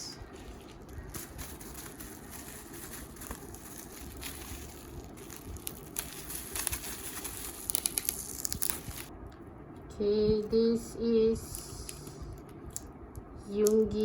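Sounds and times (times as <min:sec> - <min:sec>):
packaging crinkling and rustling: 0:00.2 - 0:09.1.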